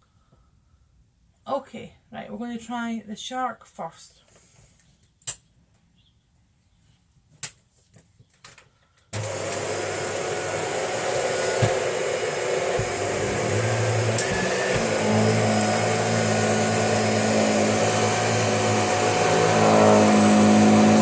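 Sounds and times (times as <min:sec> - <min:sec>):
vacuum cleaner running: 0:09.2 - 0:21.0.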